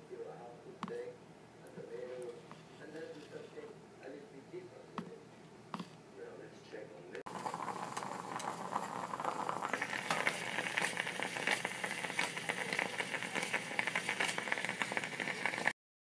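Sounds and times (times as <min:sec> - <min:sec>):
soup sizzling and bubbling: 0:07.3 - 0:15.8.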